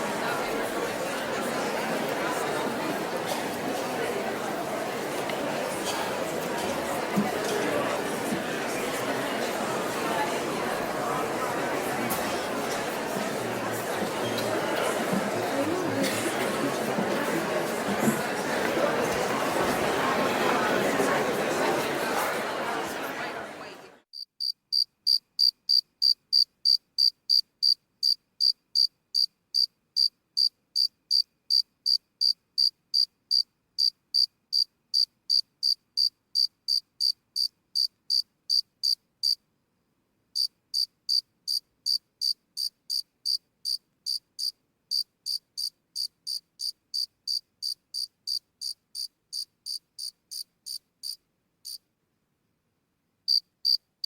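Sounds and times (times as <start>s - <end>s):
crowd chatter: 0.0s - 24.0s
cricket chirping: 24.2s - 39.4s, 40.4s - 51.8s.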